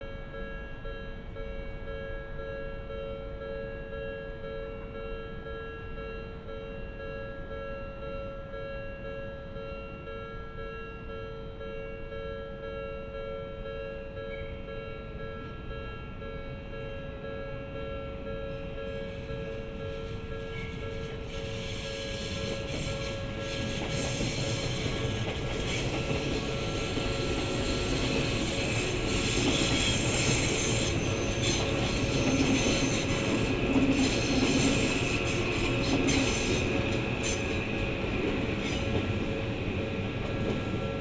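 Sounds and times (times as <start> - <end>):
level crossing warning bell: 0.1 - 41.0
approaching train hiss: 20.0 - 41.0.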